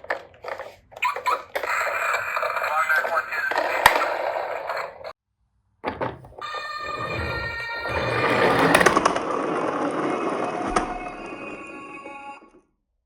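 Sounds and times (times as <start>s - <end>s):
electronic ringing tone: 6.4s - 9.0s, 10.9s - 12.6s.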